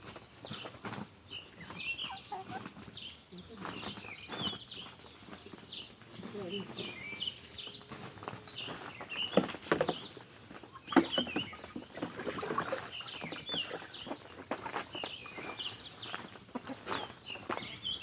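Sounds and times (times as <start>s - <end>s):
chicks chirping: 0.4s - 18.0s.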